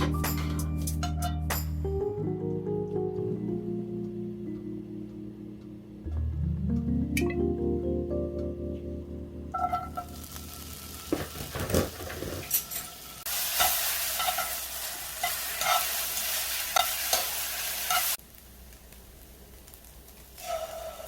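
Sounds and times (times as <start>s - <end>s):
noodles sizzling in a pan: 9.6s - 21.0s
spatula scraping and tapping pan: 11.1s - 12.8s.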